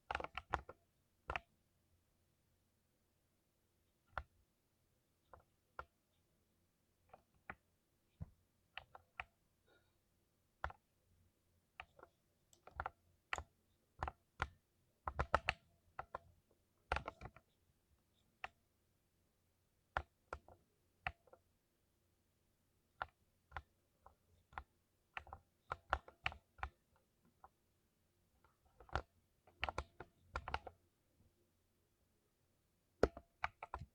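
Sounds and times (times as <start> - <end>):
keyboard keystrokes: 16.9 - 17.4, 28.7 - 30.7.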